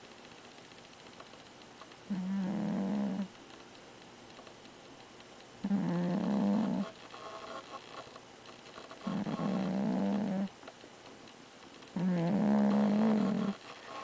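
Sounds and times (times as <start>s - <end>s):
cat snoring: 2.1s - 3.3s, 5.6s - 6.9s, 9.0s - 10.5s, 12.0s - 14.0s.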